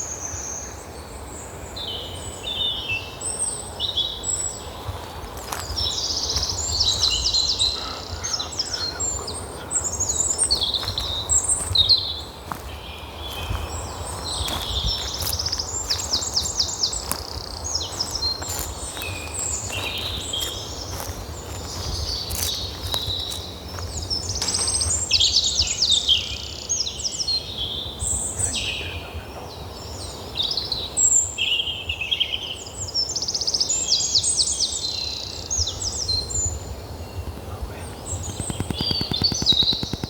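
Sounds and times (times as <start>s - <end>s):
songbirds singing and calling: 0.0s - 40.0s
steady low rumble: 4.5s - 25.9s.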